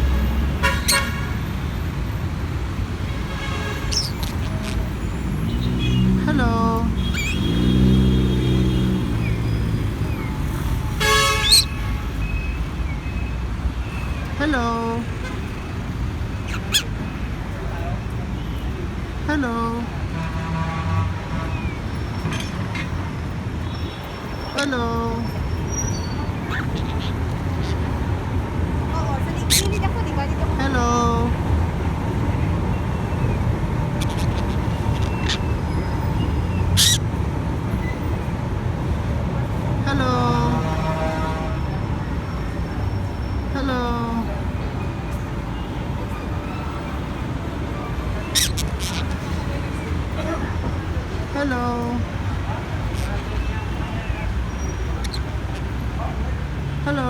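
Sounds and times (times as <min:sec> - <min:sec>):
low traffic rumble: 0:00.0 - 0:57.0
vehicle hum: 0:00.0 - 0:57.0
bird chirps: 0:03.9 - 0:04.8, 0:07.0 - 0:08.1, 0:11.4 - 0:14.2, 0:16.4 - 0:17.2, 0:25.2 - 0:27.9, 0:32.8 - 0:37.0, 0:48.2 - 0:49.4
car horn toot: 0:11.0 - 0:12.0.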